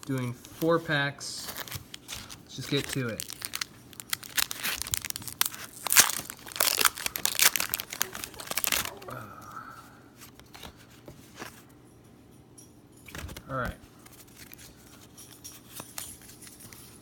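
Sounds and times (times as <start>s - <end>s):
foil wrapper tearing and crinkling: 1.4s - 9.1s.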